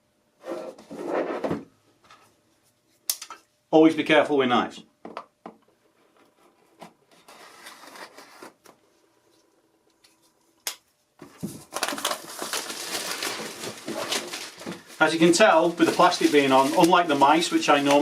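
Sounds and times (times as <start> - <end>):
plastic wrapping crinkling: 11.2 - 18.0
knife scratching plastic wrap: 11.7 - 18.0.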